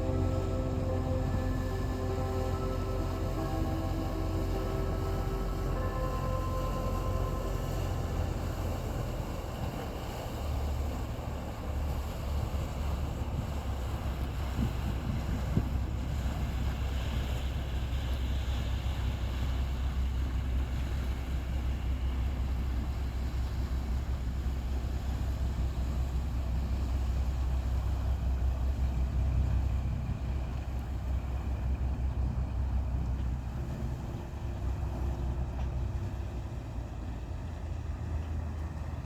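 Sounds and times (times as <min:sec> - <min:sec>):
boat engine droning: 0:00.0 - 0:39.0.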